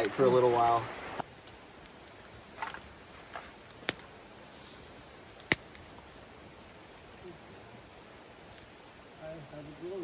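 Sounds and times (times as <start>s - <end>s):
faint steady hiss: 0.0s - 10.0s.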